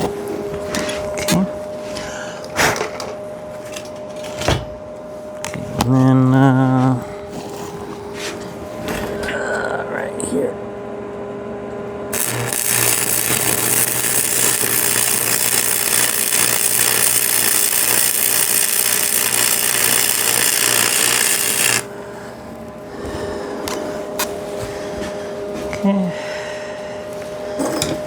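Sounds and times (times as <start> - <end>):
welding arc crackling and hissing: 12.1 - 21.9.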